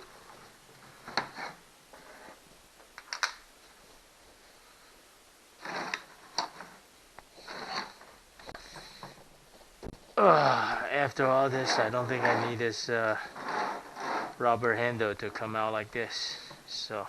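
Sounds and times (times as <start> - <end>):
plastic and rubber parts rubbing: 0.0 - 2.6, 5.6 - 10.1, 11.4 - 15.6.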